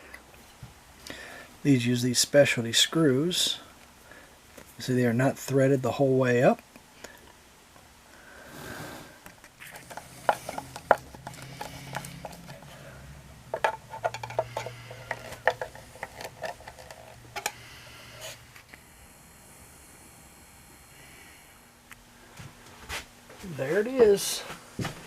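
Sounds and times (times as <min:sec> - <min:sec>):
metal clicks and knocks of screws: 0:13.6 - 0:17.6.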